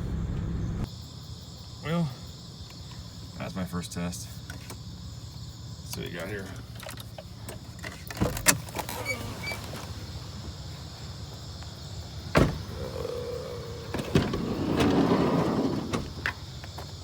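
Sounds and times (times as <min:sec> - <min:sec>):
squeaking scrape: 0:08.6 - 0:10.0, 0:13.9 - 0:16.1.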